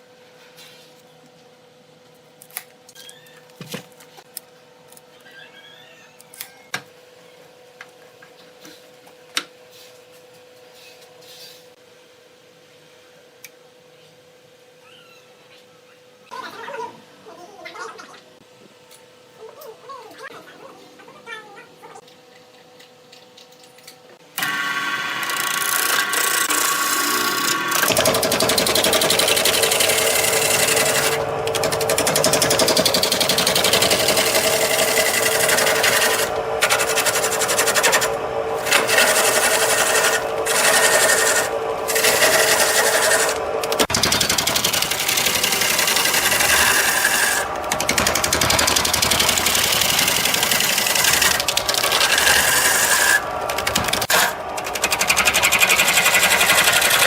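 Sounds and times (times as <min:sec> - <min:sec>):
wood lathe motor hum: 0:24.4 - 0:57.0
turning tool scraping wood: 0:25.2 - 0:57.0.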